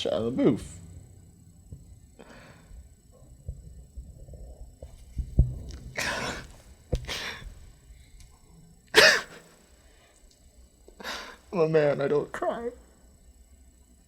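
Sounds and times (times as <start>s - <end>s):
low thumps: 0.6s - 8.8s.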